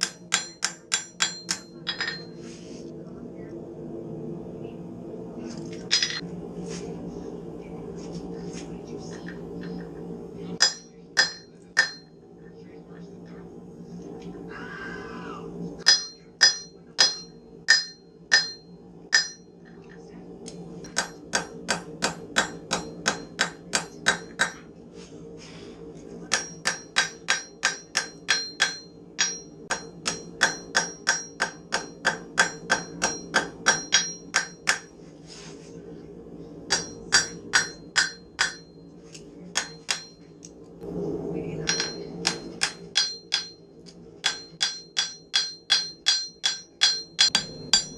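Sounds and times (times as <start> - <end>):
hammer striking metal on anvil: 0.0 - 2.4, 5.9 - 6.2, 10.6 - 12.1, 15.8 - 19.5, 20.9 - 24.6, 26.3 - 34.9, 36.7 - 38.8, 39.5 - 40.2, 41.6 - 43.6, 44.2 - 47.9
steady low hum: 0.0 - 47.9.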